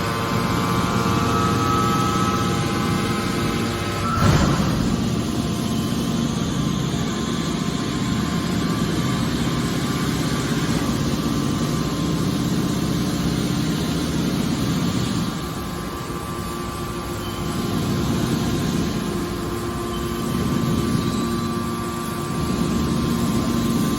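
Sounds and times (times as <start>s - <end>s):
baler machine humming: 0.0s - 23.9s.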